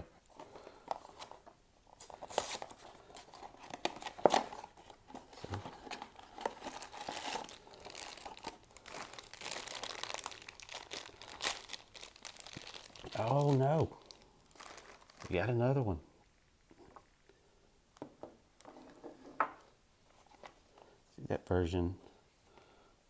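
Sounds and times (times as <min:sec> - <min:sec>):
packaging tearing and crinkling: 0:02.0 - 0:15.4.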